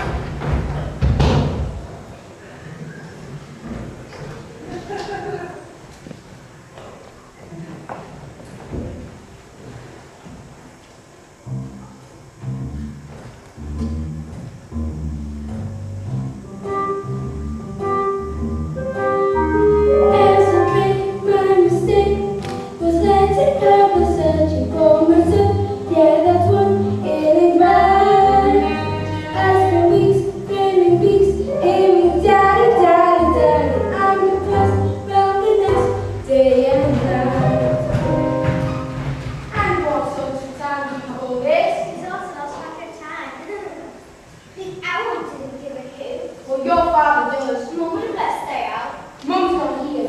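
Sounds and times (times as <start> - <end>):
band accompaniment with bass: 11.5 - 39.5
voices singing show song: 19.9 - 37.9.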